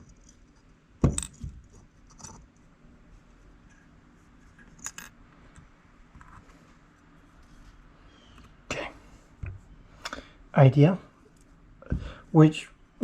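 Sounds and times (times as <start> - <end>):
small metal parts clinking: 4.6 - 5.2.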